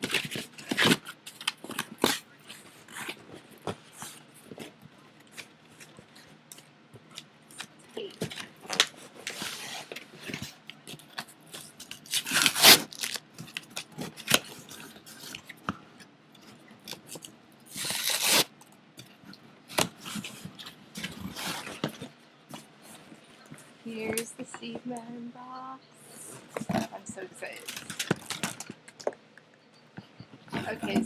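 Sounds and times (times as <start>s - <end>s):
packaging rustling and scraping: 8.2s - 15.8s, 16.4s - 18.5s, 19.1s - 24.8s, 26.2s - 28.9s
packaging tearing: 11.6s - 15.4s, 17.7s - 18.5s.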